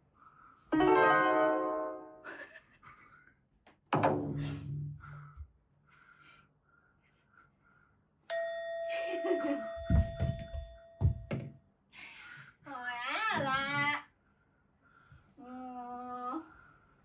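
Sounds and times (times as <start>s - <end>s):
falling pitched sound effect: 0.7s - 2.2s
ringing bell ding: 8.3s - 11.3s.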